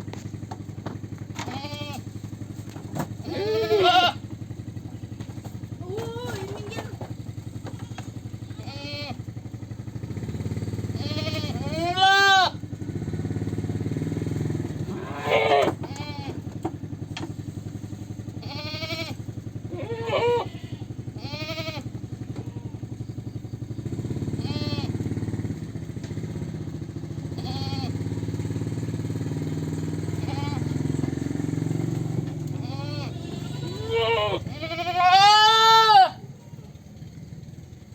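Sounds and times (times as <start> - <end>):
low motor rumble: 0.0 - 37.9
goats bleating: 1.3 - 2.2, 3.1 - 4.3, 5.8 - 9.3, 11.0 - 12.6, 14.8 - 16.6, 18.4 - 22.9, 24.3 - 25.0, 27.2 - 28.0, 30.0 - 31.2, 32.4 - 36.8.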